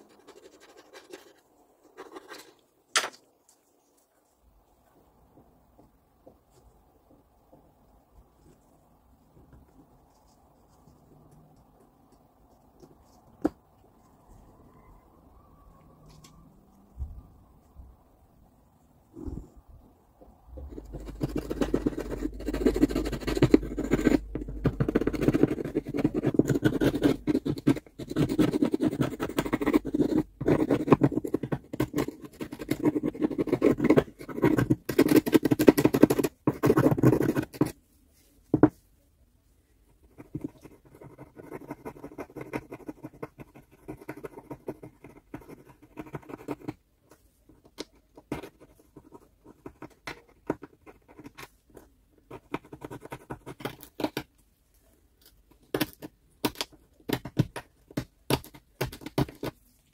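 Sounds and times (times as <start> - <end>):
scratching and scraping by hand: 20.6 - 38.9.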